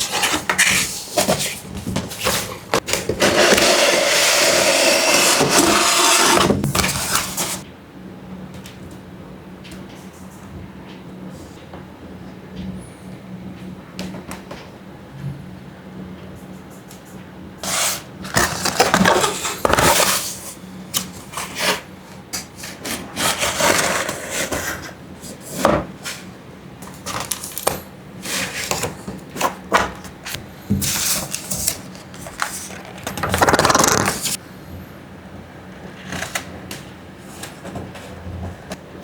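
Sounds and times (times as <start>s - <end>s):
packaging rubbing and scraping: 0.0s - 7.6s, 17.6s - 20.6s, 22.6s - 25.5s, 30.9s - 34.4s.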